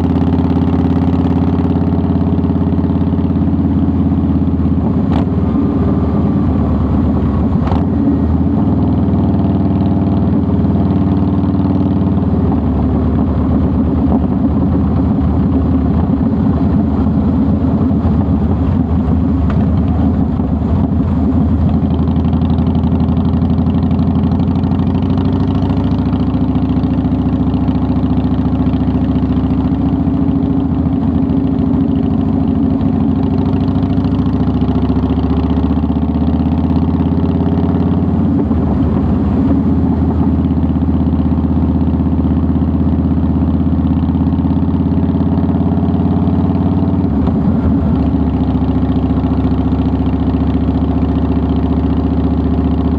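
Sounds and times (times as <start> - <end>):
motorcycle engine running: 0.0 - 52.9.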